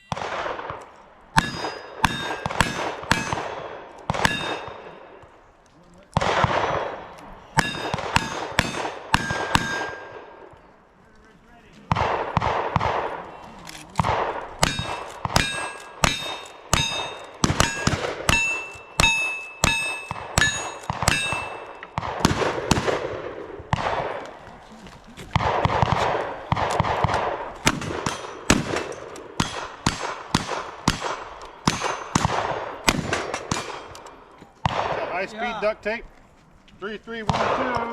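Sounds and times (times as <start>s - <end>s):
gunshots: 0.0s - 5.3s, 6.0s - 10.6s, 11.8s - 35.6s, 37.2s - 37.9s
steel targets ringing: 1.4s - 3.5s, 4.2s - 5.2s, 7.6s - 10.3s, 14.6s - 22.0s.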